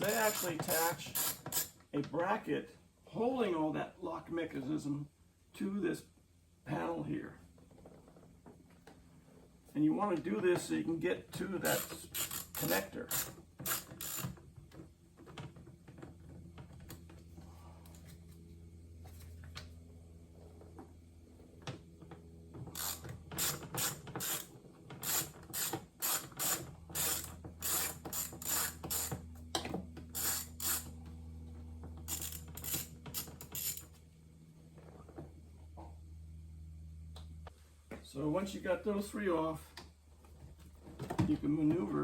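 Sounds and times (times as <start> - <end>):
ratchet clicking: 0.0 - 1.8, 11.6 - 14.4, 22.7 - 29.2, 30.1 - 30.9, 32.0 - 33.9
steady low hum: 15.7 - 42.0.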